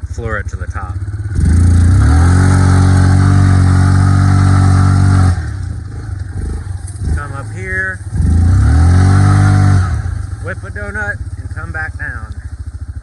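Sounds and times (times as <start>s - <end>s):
atv engine at full throttle: 0.0s - 13.0s.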